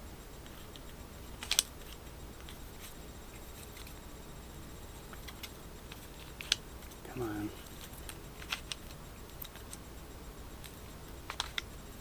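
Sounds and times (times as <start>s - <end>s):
plastic puzzle clicking: 10.6s - 11.7s.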